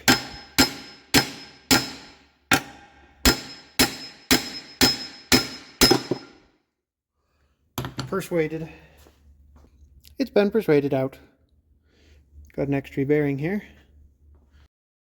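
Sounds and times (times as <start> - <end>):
hammer striking metal: 0.0 - 6.5.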